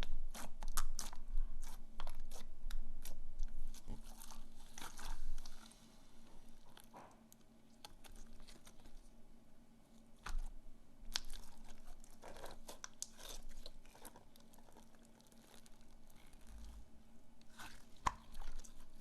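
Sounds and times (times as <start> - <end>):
slime crackling and popping: 11.1 - 16.8, 17.4 - 19.0.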